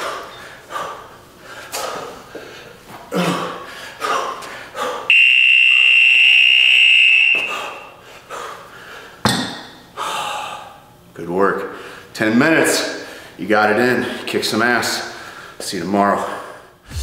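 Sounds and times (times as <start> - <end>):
timer buzzer high tone: 5.1 - 7.9.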